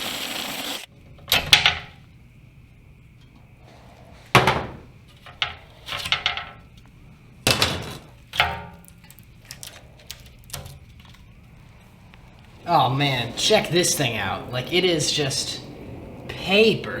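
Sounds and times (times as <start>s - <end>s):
metal knocks and clanks: 4.3s - 6.7s, 7.4s - 11.2s.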